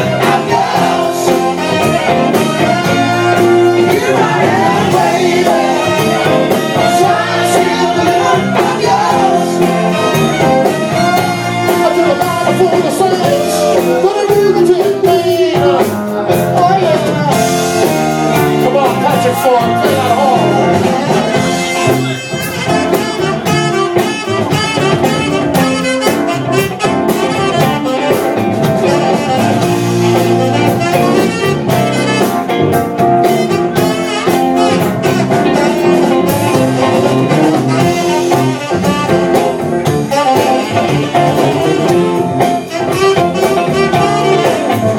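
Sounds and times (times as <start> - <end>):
horns playing: 0.0 - 14.4, 17.3 - 44.9
lead singer singing: 0.0 - 22.1, 33.2 - 44.9
live soul band playing: 0.0 - 44.9
steady drum beat: 0.0 - 44.9.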